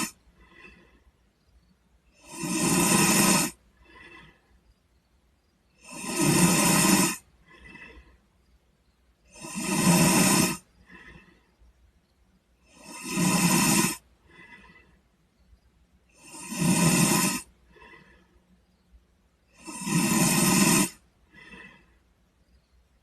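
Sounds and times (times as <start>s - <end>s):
boy snoring: 0.0s - 1.0s, 2.1s - 4.4s, 5.7s - 8.1s, 9.2s - 11.4s, 12.6s - 14.9s, 16.1s - 18.2s, 19.5s - 22.0s
soft breath: 0.0s - 12.4s, 13.4s - 23.0s.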